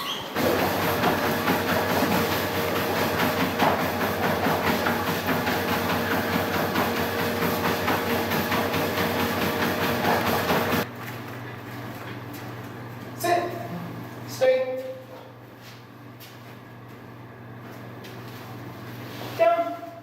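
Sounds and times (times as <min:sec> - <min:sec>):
machine humming and clattering: 0:00.2 - 0:14.2.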